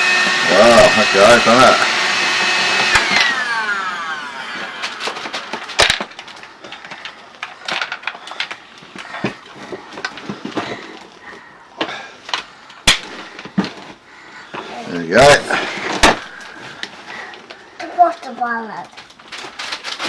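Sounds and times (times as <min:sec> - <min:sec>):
vacuum cleaner motor whine: 0:00.0 - 0:07.2.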